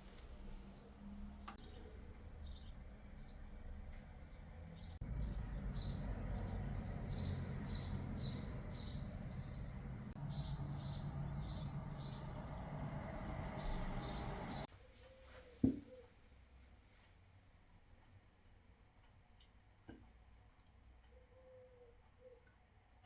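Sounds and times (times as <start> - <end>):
low steady rumble: 5.0 - 14.7
small bird chirping: 5.0 - 15.3.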